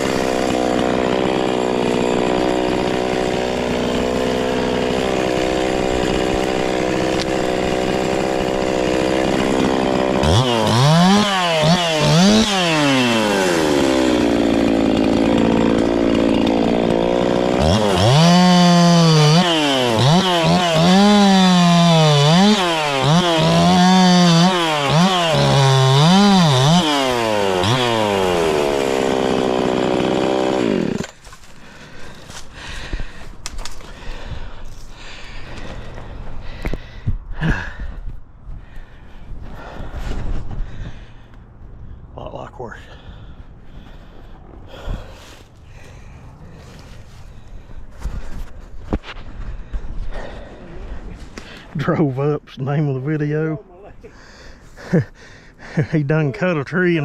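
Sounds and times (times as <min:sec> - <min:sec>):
chainsaw idling and revving: 0:00.0 - 0:37.8, 0:54.1 - 0:57.0.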